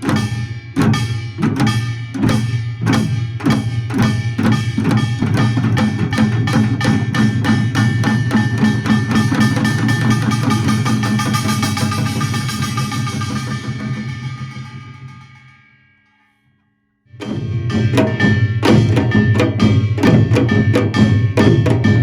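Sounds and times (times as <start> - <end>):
percussion ensemble playing fast rhythm: 0.0 - 15.6, 17.2 - 22.0
ringing gong tones: 5.4 - 15.8.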